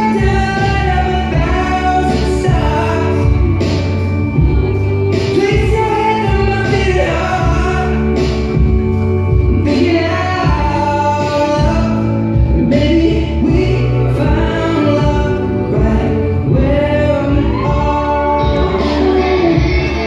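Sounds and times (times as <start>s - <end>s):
steady musical accompaniment: 0.0s - 20.0s.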